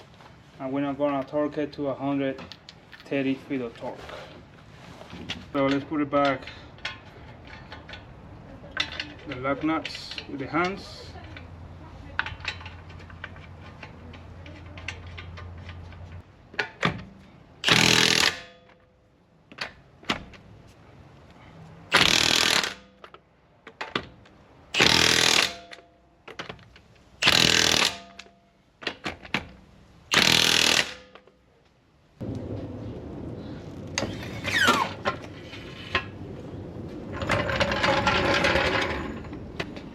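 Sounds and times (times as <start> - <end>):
impact wrench bursts: 17.6 - 18.6, 21.9 - 23.0, 24.7 - 25.8, 27.2 - 28.3, 30.1 - 31.2.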